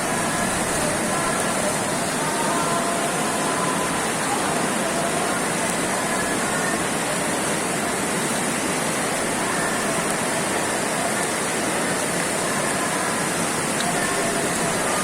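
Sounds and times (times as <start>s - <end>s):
floodwater rushing: 0.0s - 15.0s.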